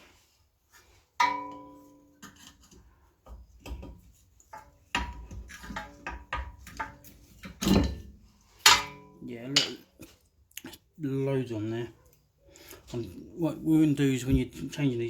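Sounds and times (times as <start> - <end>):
metal tools clinking and knocking: 4.5 - 10.0.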